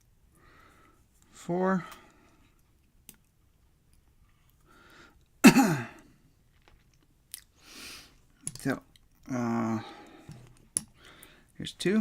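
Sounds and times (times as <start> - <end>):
man clearing throat: 5.4 - 6.0
breathy hiss: 7.6 - 8.2.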